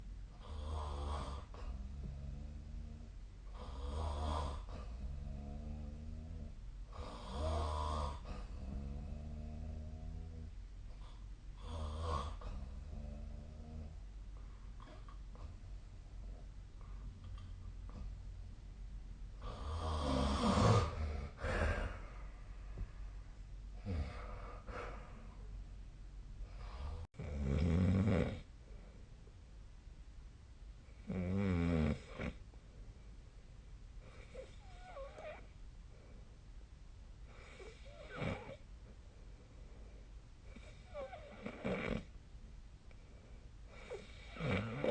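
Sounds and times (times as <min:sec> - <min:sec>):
quiet breathing: 0:00.0 - 0:18.4, 0:19.3 - 0:27.3, 0:28.4 - 0:29.4, 0:31.9 - 0:42.2, 0:42.8 - 0:44.9
person snoring: 0:00.4 - 0:10.5, 0:19.4 - 0:22.2, 0:26.6 - 0:28.5, 0:43.8 - 0:44.9.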